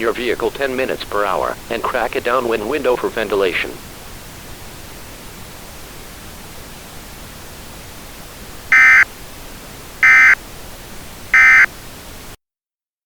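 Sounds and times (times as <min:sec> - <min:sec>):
radio hiss: 0:00.0 - 0:12.4
digital data bursts: 0:08.7 - 0:09.0, 0:10.0 - 0:10.4, 0:11.3 - 0:11.7.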